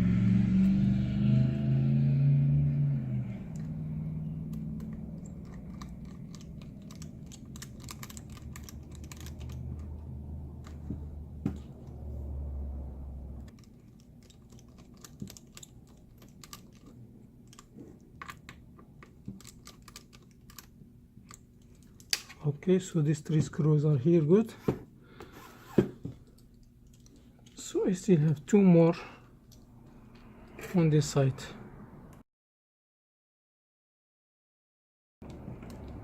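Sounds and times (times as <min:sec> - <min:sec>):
low hum: 0:00.0 - 0:22.3
screwdriver clicks and ticks: 0:04.5 - 0:10.0.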